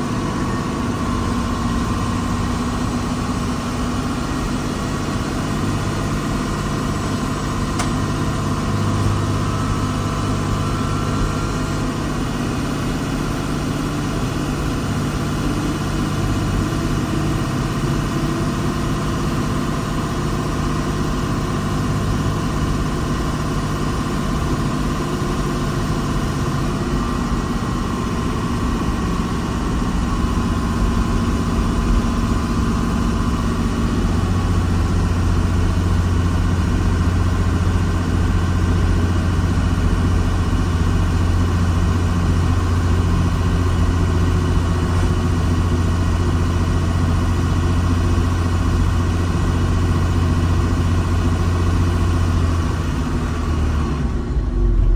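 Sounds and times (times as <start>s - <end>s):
diesel engine running steadily: 0.0s - 54.9s.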